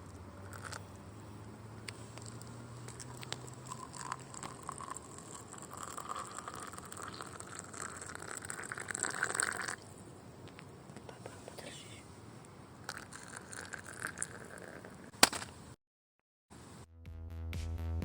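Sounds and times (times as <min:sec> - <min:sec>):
water pouring into a cup: 0:00.5 - 0:00.8, 0:02.2 - 0:09.9, 0:12.8 - 0:15.0.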